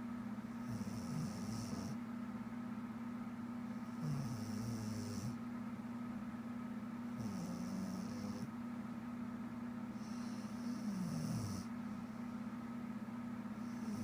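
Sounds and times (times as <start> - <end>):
steady low hum: 0.0 - 14.0
woman snoring: 0.6 - 2.0, 4.0 - 5.4, 7.2 - 8.5, 10.0 - 11.7, 13.6 - 14.0.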